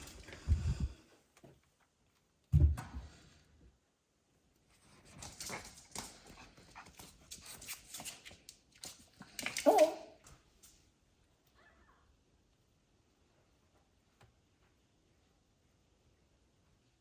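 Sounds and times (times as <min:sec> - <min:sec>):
puppy yelping: 0:09.6 - 0:10.2.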